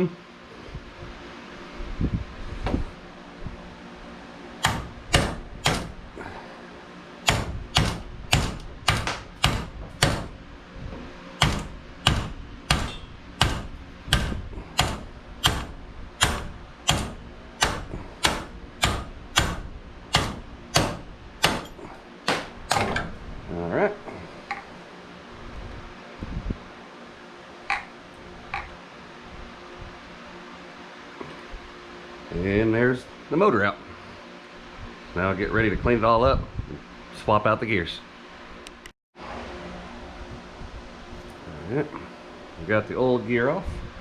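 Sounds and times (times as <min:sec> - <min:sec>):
hammer blows on metal: 0:04.6 - 0:06.4, 0:07.2 - 0:10.4, 0:11.4 - 0:22.8.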